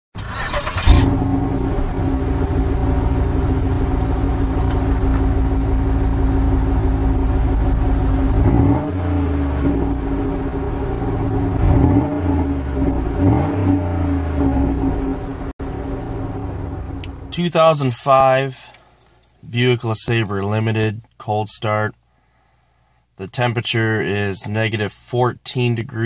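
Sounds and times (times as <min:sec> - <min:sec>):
car engine fast idle: 0:00.2 - 0:08.0.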